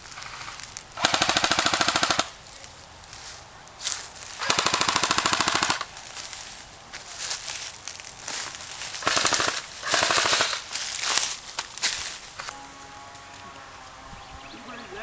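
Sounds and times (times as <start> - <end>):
airsoft gun full-auto bursts: 1.0 - 2.3, 4.4 - 5.9, 9.0 - 10.7.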